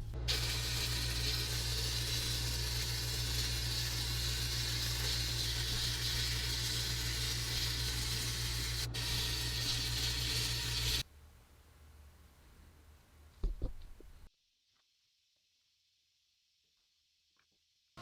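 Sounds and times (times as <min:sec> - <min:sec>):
low machine hum: 0:00.0 - 0:13.3.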